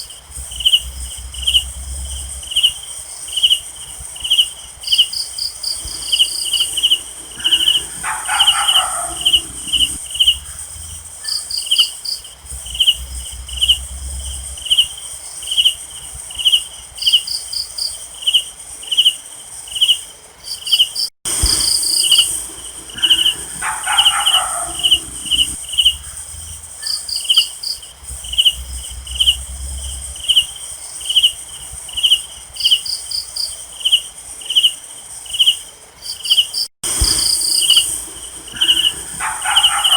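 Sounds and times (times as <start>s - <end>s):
higher chirps: 0.0s - 3.7s, 4.9s - 15.0s, 21.3s - 30.6s, 36.8s - 39.9s
cricket chirping: 0.0s - 39.9s
high insect trill: 0.0s - 39.9s.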